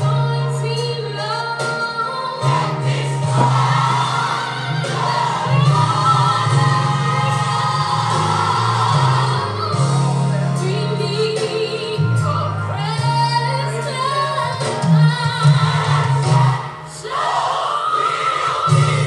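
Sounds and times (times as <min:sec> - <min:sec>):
gospel music: 0:00.0 - 0:19.0
woman singing lead: 0:00.0 - 0:19.0
choir singing: 0:02.2 - 0:10.0, 0:15.7 - 0:19.0
bass line: 0:02.4 - 0:11.3.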